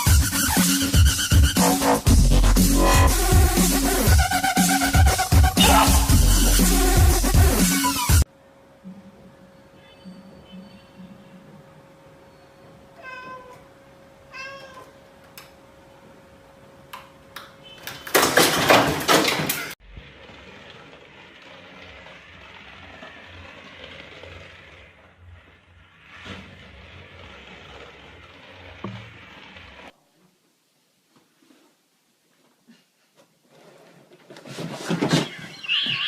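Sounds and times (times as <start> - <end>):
cat meowing: 13.0 - 13.6, 14.3 - 14.9.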